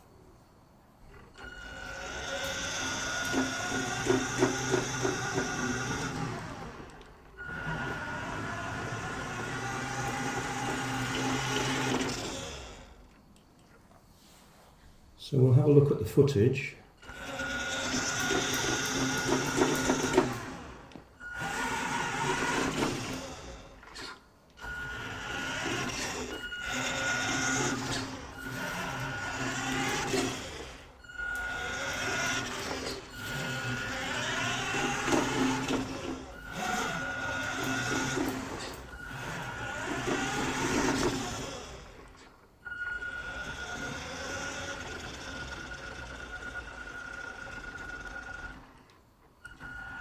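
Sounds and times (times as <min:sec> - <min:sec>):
toy car electric motor whirring: 0:01.1 - 0:13.2, 0:17.0 - 0:50.0.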